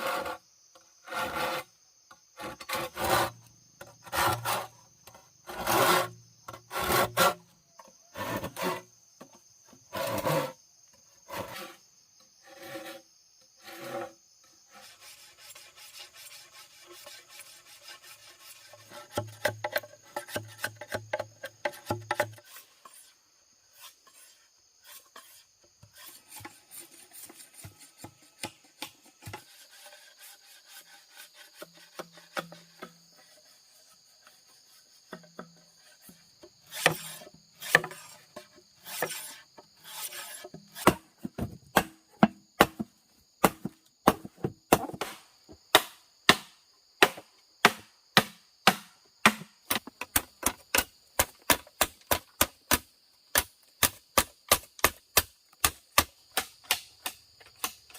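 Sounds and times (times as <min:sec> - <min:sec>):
insects buzzing: 0:00.0 - 0:57.9
strikes on wood: 0:40.8 - 0:57.8.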